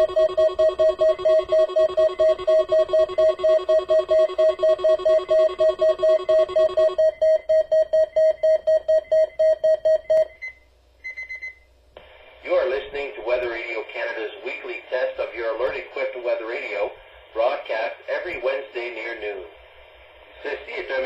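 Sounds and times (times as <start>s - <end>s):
steady high tone: 0.0s - 7.0s
rapid alarm beeping: 0.0s - 11.6s.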